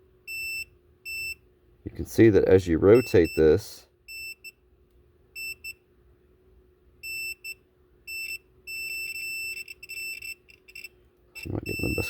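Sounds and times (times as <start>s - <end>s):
multimeter continuity beeps: 0.3s - 1.4s, 2.9s - 4.6s, 5.4s - 5.8s, 7.0s - 12.0s.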